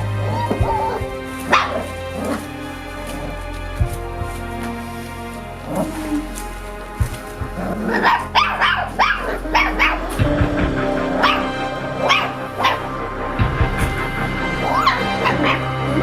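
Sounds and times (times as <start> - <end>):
puppies yelping: 0.0 - 3.7, 7.1 - 16.0
background music: 0.0 - 16.0.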